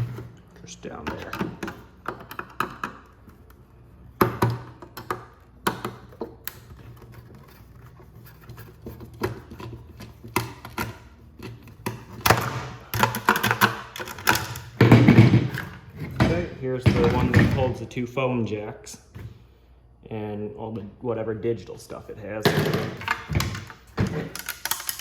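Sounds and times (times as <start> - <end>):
tools clicking and tapping: 1.0 - 3.6, 4.2 - 17.4, 22.7 - 25.0.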